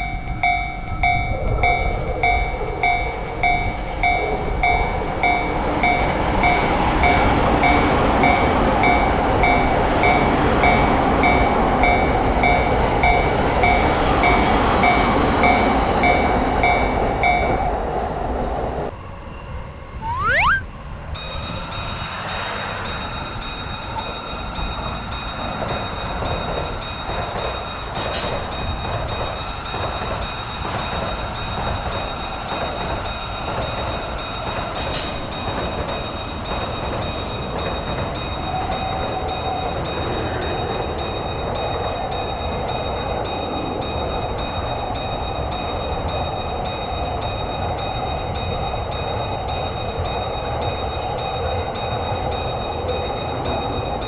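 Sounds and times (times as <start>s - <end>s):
crossing warning bell dinging: 0.0s - 17.8s, 21.2s - 54.0s
train running past: 0.0s - 20.0s, 20.7s - 54.0s
rising whistle-like sound: 20.0s - 20.7s.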